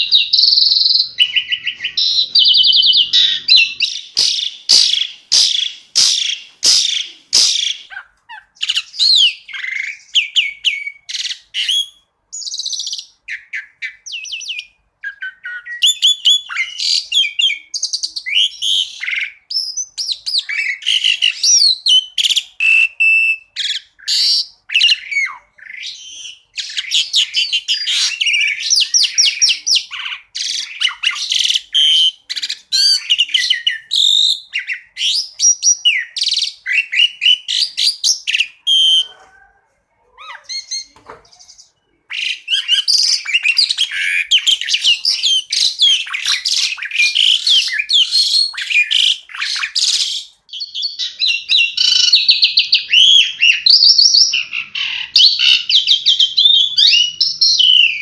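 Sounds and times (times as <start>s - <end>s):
starling singing: 0.0s - 58.0s
sharp clicking bird notes: 3.4s - 8.0s.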